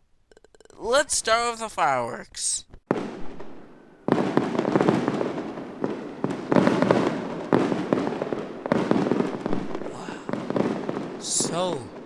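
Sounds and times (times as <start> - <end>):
fireworks crackling and bursting: 2.9 - 12.0.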